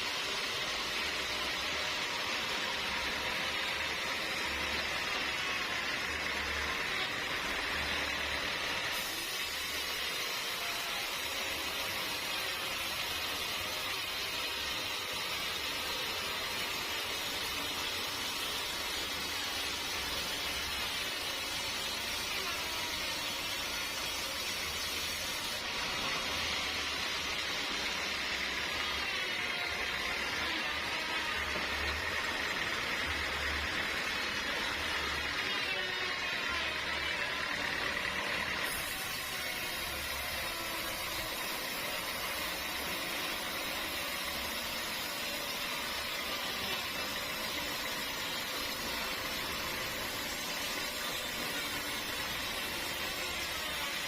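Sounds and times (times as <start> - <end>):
sawmill cutting log: 25.6 - 54.0.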